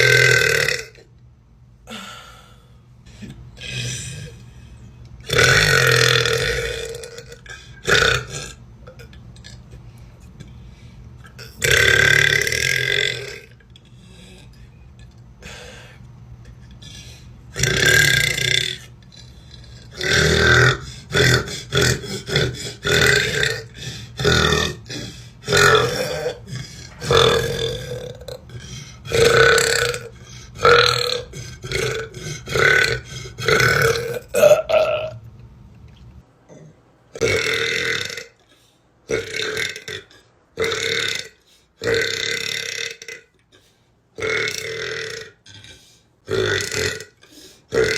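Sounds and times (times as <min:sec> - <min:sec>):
woman belching: 0:00.0 - 0:01.0, 0:19.8 - 0:24.9, 0:25.5 - 0:28.5, 0:29.1 - 0:35.2, 0:36.5 - 0:38.4, 0:39.1 - 0:43.3, 0:44.2 - 0:45.6, 0:46.3 - 0:47.9.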